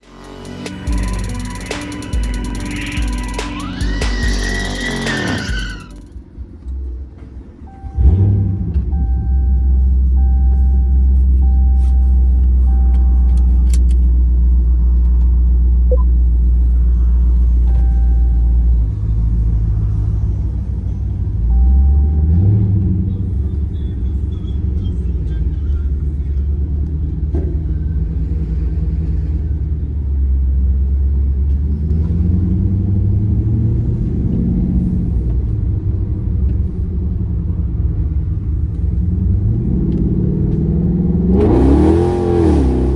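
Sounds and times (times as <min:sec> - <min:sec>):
car engine starting and idling: 0:00.0 - 0:42.9
dashboard warning chime: 0:07.7 - 0:13.9, 0:15.9 - 0:16.1, 0:17.6 - 0:19.4.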